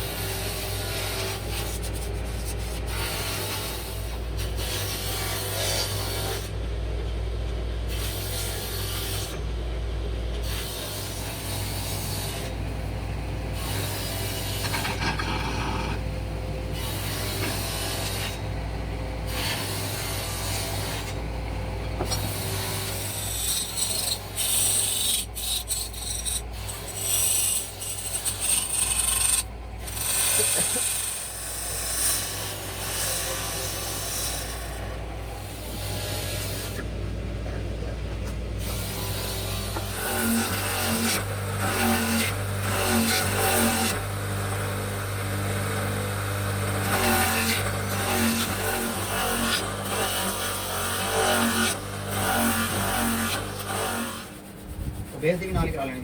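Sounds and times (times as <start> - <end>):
steady low hum: 0.0 - 47.0, 47.6 - 56.0
hand tool rasping wood: 13.6 - 16.0, 22.0 - 34.8, 46.6 - 56.0.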